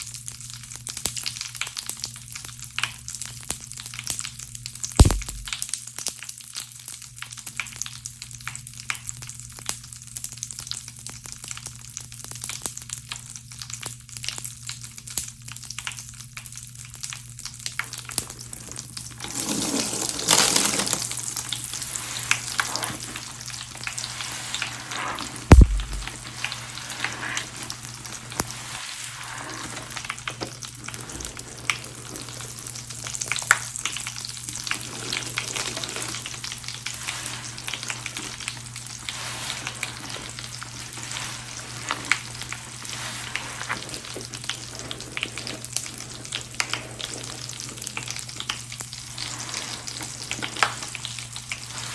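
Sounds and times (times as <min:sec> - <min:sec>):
bath crackles popping and fizzing: 0:00.0 - 0:51.9
sharp knock: 0:05.0 - 0:05.6, 0:25.5 - 0:26.2
steady low hum: 0:05.0 - 0:05.6
wet sponge squelching: 0:05.0 - 0:05.6, 0:19.2 - 0:32.7, 0:36.9 - 0:47.4.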